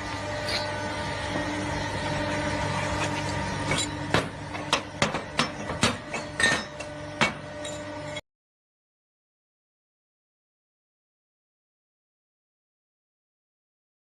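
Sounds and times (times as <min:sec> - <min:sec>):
hydraulic pump motor humming: 0:00.0 - 0:08.2.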